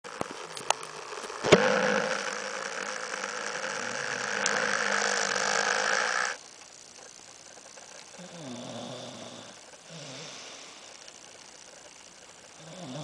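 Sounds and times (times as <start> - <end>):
loud snore: 1.4 - 6.4, 8.2 - 10.6, 12.6 - 13.0.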